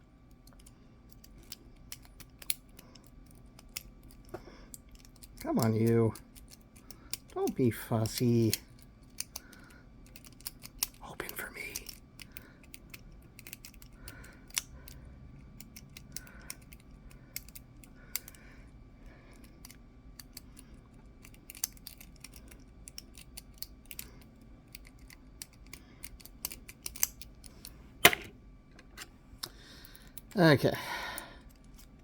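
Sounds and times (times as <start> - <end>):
lock picking clicks and scratching: 0.3 - 18.4, 19.3 - 29.1, 31.4 - 32.0
sharp padlock click: 28.0 - 28.3.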